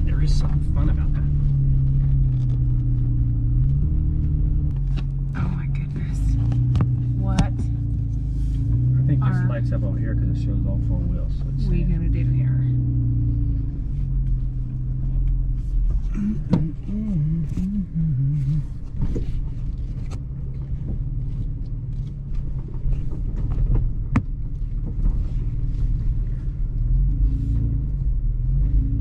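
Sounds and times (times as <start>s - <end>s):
engine low rumble: 0.0s - 29.0s
wavering hum: 15.4s - 19.2s.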